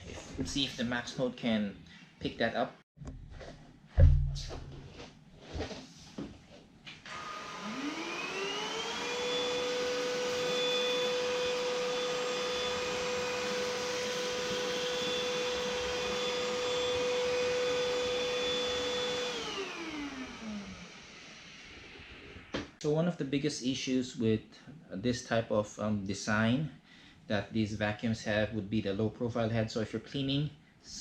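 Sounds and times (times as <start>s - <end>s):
vacuum cleaner motor whine: 7.0s - 22.5s.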